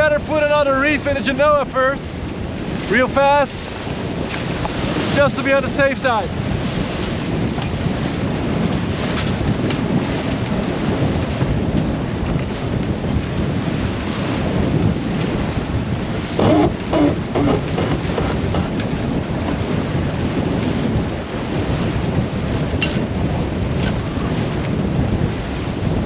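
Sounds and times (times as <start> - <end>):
water rushing past hull: 0.0 - 26.0
wind buffeting microphone: 0.0 - 26.0.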